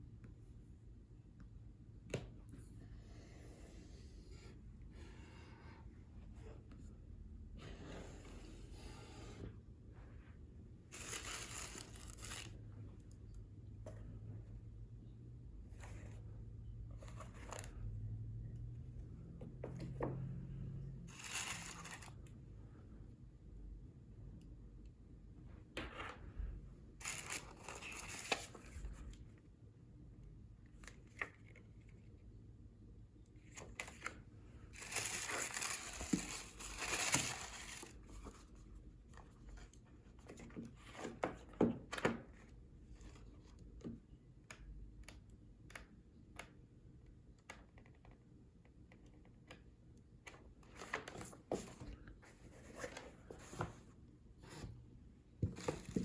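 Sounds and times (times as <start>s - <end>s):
packaging crinkling and tearing: 27.0s - 28.4s, 34.8s - 37.9s.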